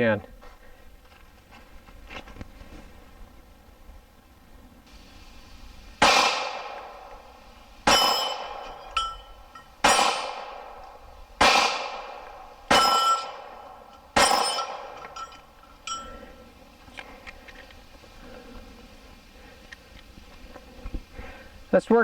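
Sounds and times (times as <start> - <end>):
pistol shots: 6.0 - 15.2
steel plate ringing clang: 6.0 - 16.5.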